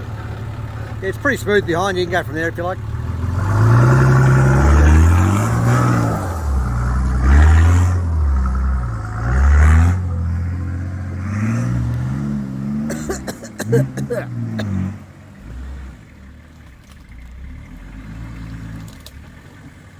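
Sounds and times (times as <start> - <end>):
vehicle engine revving: 0.0 - 19.9.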